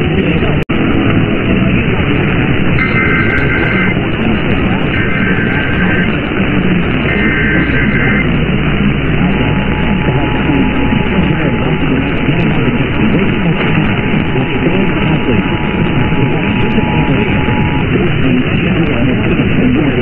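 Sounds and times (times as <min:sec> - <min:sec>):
heavy radio static: 0:00.0 - 0:20.0
warbling data header bursts: 0:00.8 - 0:20.0
two-tone attention signal: 0:02.8 - 0:18.6.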